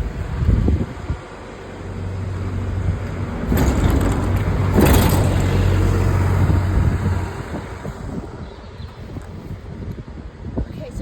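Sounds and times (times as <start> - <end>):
bus engine humming: 0.0 - 8.7.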